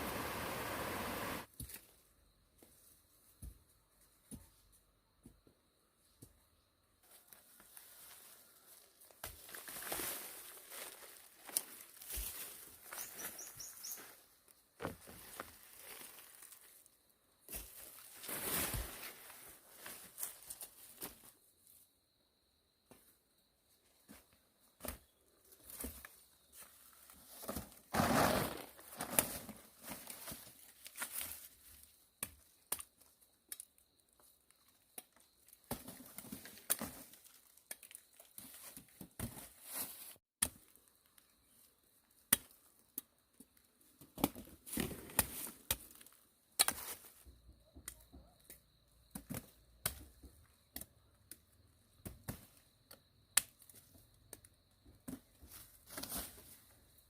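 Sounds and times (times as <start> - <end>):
leaves rustling and tearing: 7.6 - 13.3.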